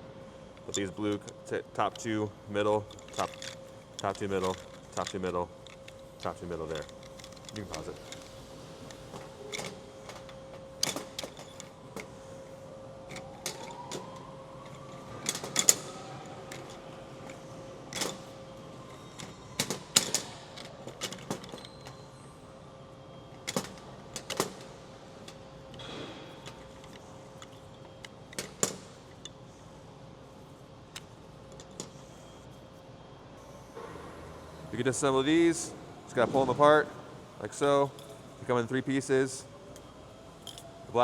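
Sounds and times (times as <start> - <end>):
machinery hum with steady tone: 0.0 - 41.0
small parts clicking and knocking: 0.6 - 12.1, 13.1 - 22.0, 23.4 - 29.4, 40.4 - 40.7.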